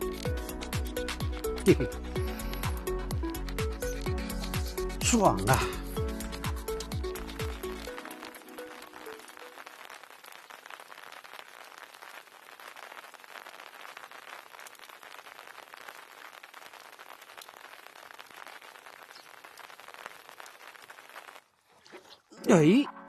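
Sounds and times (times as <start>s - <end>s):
water droplets pattering: 5.4s - 21.5s.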